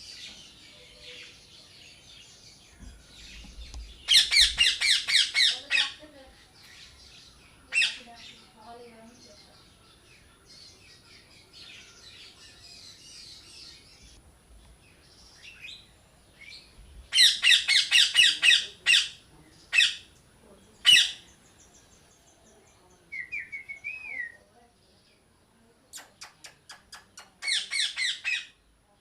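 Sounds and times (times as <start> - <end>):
birds chattering: 0.0 - 29.0
parrot squawking: 4.1 - 6.0, 7.7 - 8.0, 17.1 - 20.1, 20.8 - 21.2, 27.4 - 28.5.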